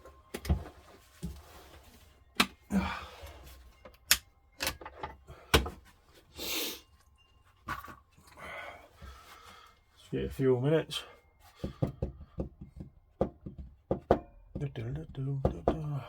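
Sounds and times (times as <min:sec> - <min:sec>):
sharp handling clicks and knocks: 0:00.2 - 0:06.0.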